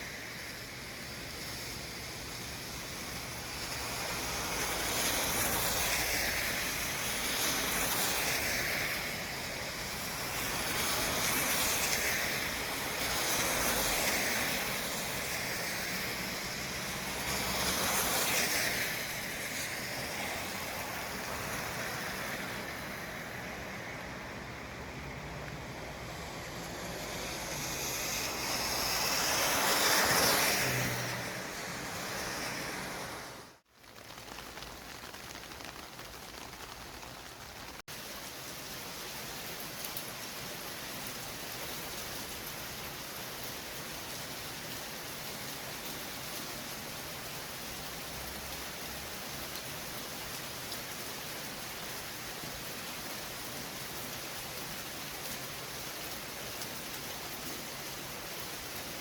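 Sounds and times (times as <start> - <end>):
steady traffic hiss: 0.0 - 59.0
vehicle passing close by: 20.1 - 33.6.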